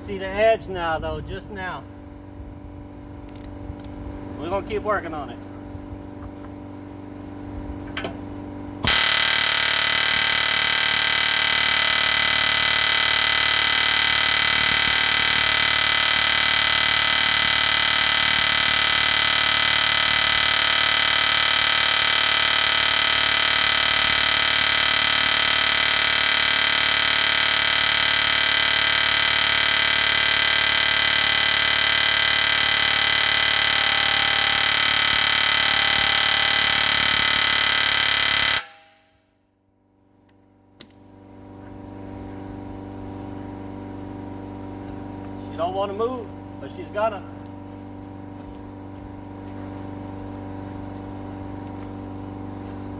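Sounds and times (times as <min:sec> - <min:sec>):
pneumatic air hammer buzzing: 0:07.9 - 0:39.2.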